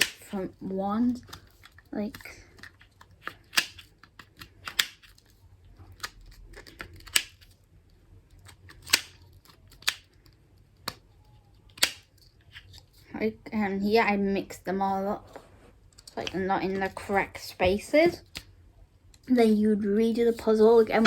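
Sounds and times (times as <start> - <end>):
puzzle ball plastic clicks: 1.0 - 12.9.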